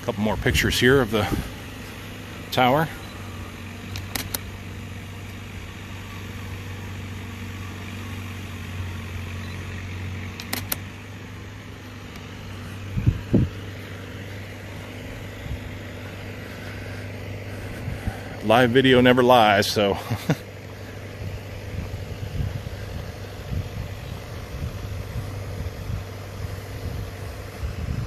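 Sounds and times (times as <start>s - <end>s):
machinery hum: 0.0s - 28.0s
sharp clicks: 3.9s - 4.5s, 10.3s - 11.0s, 12.0s - 12.3s.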